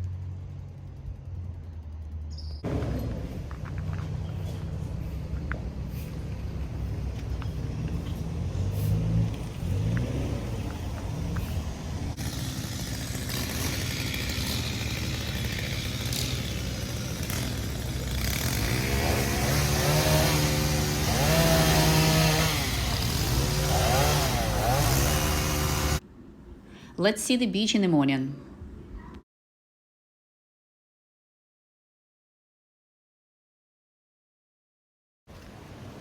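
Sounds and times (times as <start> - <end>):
small engine revving: 7.4 - 26.0.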